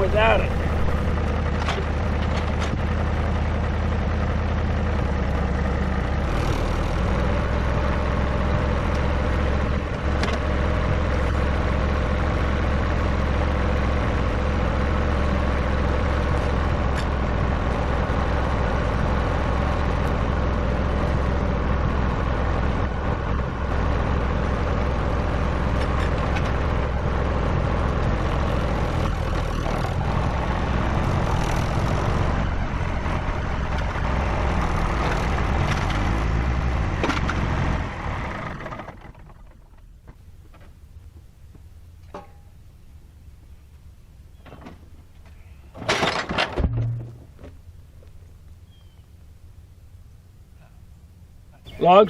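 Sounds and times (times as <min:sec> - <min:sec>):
tractor engine running: 0:00.0 - 0:52.0
faint engine knocks: 0:00.4 - 0:03.1, 0:38.3 - 0:43.1, 0:44.3 - 0:49.1.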